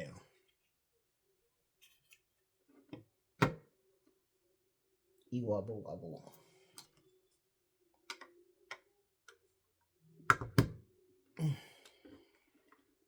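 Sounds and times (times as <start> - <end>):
person exhaling: 11.4 - 12.0.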